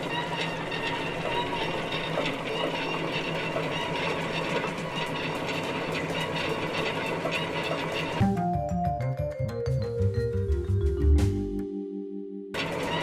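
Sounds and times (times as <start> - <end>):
mill motor humming: 12.6 - 13.0.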